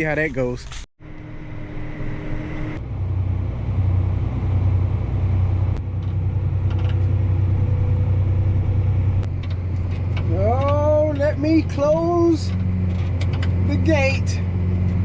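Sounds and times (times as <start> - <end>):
engine humming: 1.0 - 15.0.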